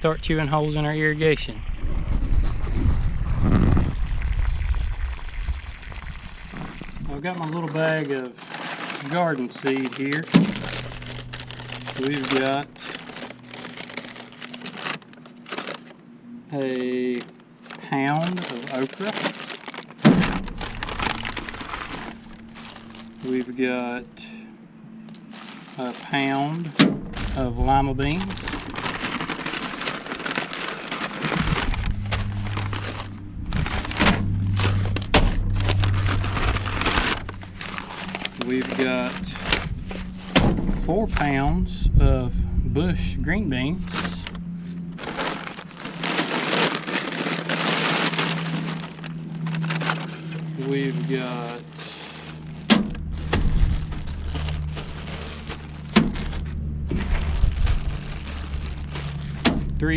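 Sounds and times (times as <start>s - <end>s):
low rumble: 0.0s - 7.3s, 9.5s - 59.9s
low hum: 0.0s - 59.9s
sharp crackles: 0.0s - 59.9s
seed packets crinkling: 3.8s - 59.9s.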